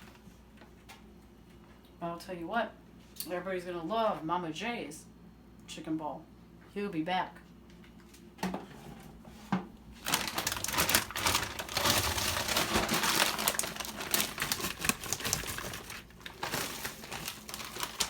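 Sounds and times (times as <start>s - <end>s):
plastic bag crinkling: 9.8s - 18.0s
frozen nuggets clattering: 10.0s - 18.0s.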